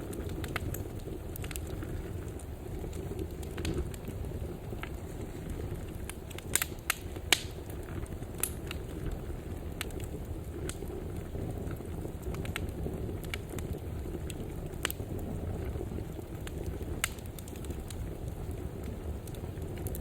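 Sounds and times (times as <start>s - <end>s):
fire crackling and popping: 0.0s - 20.0s
rumble of flames: 0.0s - 20.0s.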